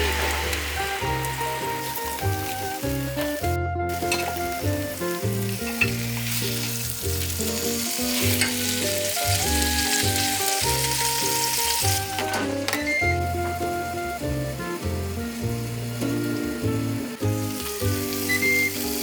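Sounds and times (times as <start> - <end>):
background music with bass: 0.0 - 19.0
meat sizzling: 0.0 - 19.0.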